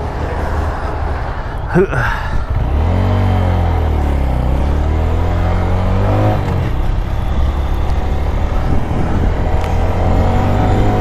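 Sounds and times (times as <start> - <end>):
motorcycle engine accelerating: 2.5 - 11.0.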